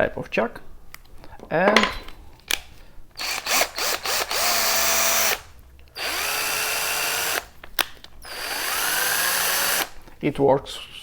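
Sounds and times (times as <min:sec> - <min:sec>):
cordless screwdriver whining: 0:03.2 - 0:07.5, 0:08.2 - 0:10.0.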